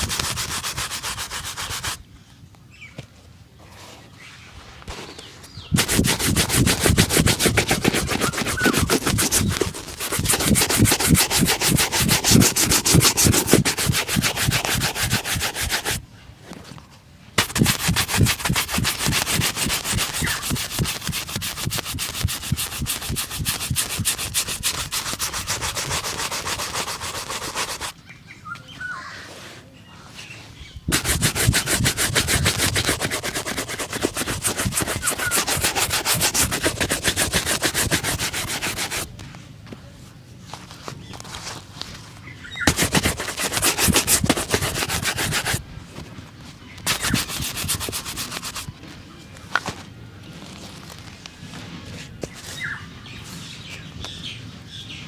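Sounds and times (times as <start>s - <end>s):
shoe being buffed: 0.0s - 2.0s, 5.7s - 16.0s, 17.4s - 27.9s, 30.9s - 39.1s, 42.7s - 45.6s, 46.8s - 48.7s.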